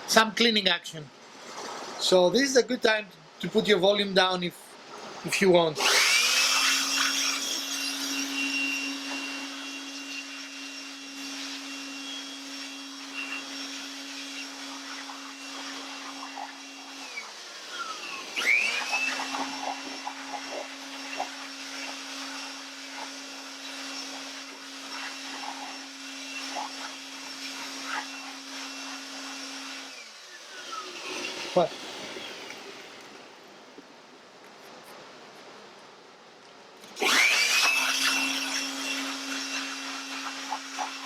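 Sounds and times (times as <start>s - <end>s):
vacuum cleaner running: 5.8s - 33.8s, 37.0s - 41.0s.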